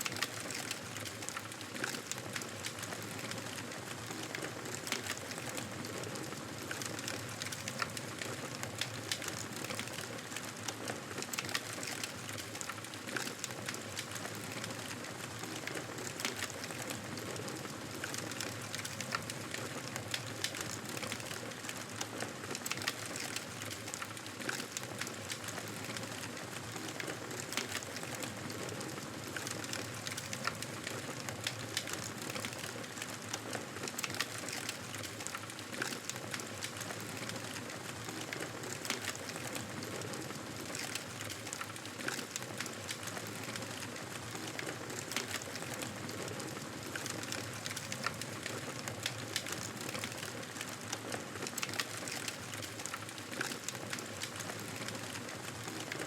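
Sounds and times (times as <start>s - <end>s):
wood fire crackling and popping: 0.0s - 56.0s.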